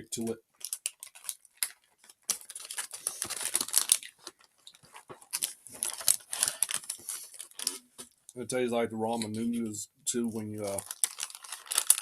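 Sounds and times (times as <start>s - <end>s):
plastic packaging crinkling: 0.6s - 8.4s, 10.6s - 12.0s.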